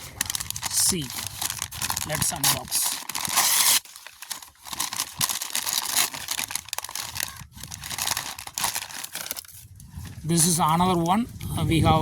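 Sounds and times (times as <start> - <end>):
packaging tearing: 0.0 - 9.6
packaging crinkling and rustling: 0.0 - 10.2.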